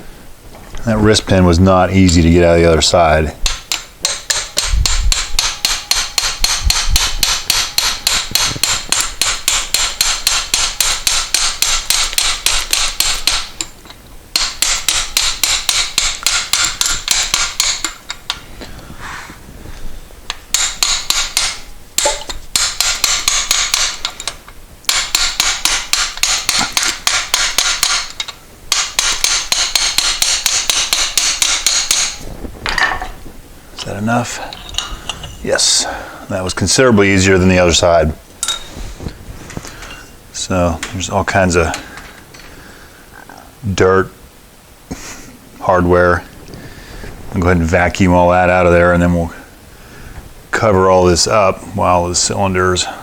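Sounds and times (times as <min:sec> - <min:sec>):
hammer striking metal: 0:03.4 - 0:13.7, 0:14.3 - 0:18.4, 0:20.5 - 0:33.1.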